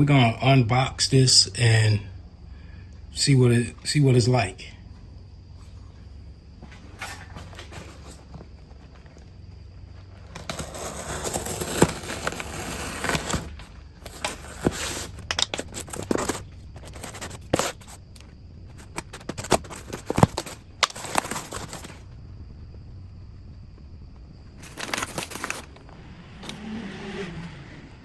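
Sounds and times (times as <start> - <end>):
wrapping rustling: 10.2 - 22.0, 24.6 - 25.8.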